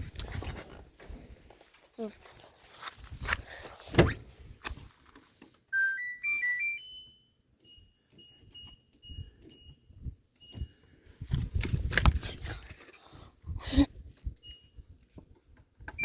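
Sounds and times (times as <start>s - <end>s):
electronic tone tune: 5.8s - 7.0s.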